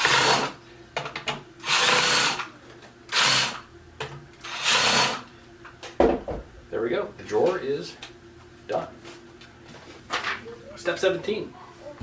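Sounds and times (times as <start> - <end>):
power drill running: 0.0 - 0.6, 1.6 - 2.5, 3.1 - 3.6, 4.4 - 5.3.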